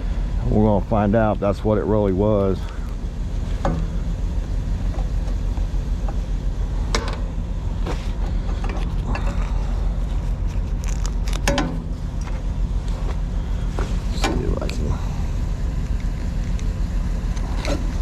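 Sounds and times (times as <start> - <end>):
truck engine idling: 0.0 - 18.0.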